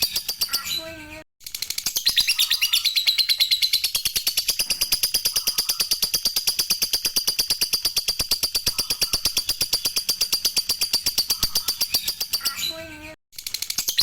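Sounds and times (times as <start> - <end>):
lovebird chattering: 2.0 - 12.6.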